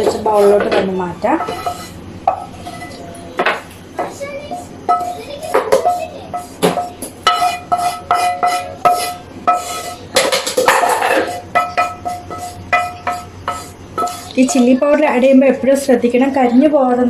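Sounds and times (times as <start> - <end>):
metal spoon scraping a pan: 0.0 - 3.2, 4.4 - 15.0
spoon tapping against pan: 10.2 - 15.0.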